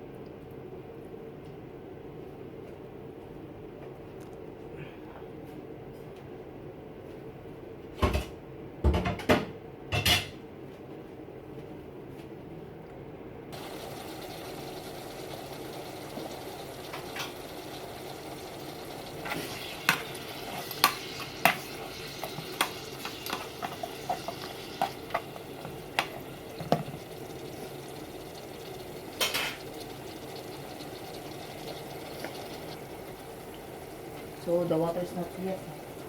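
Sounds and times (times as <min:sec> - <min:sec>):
meat sizzling in a pan: 0:13.6 - 0:36.0.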